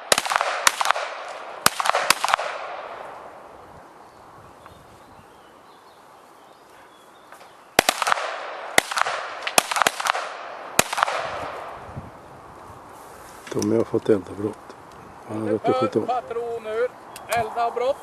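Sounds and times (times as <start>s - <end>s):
pistol shots with echo: 0.0s - 3.4s, 7.8s - 11.7s.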